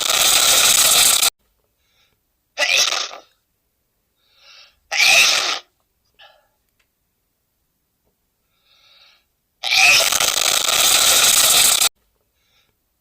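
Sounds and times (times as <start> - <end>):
faint breaths: 1.6 - 2.3, 4.1 - 4.9, 6.1 - 6.7, 8.4 - 9.4, 12.2 - 13.0.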